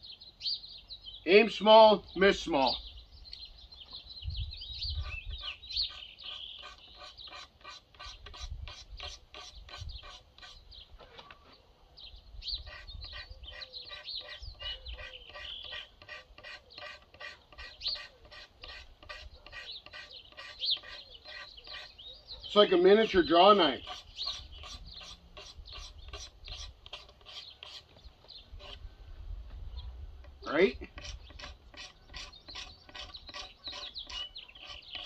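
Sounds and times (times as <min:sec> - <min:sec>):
birds chirping: 0:00.0 - 0:35.0
hand tool scraping wood: 0:05.0 - 0:11.6, 0:12.5 - 0:28.9, 0:30.2 - 0:35.0.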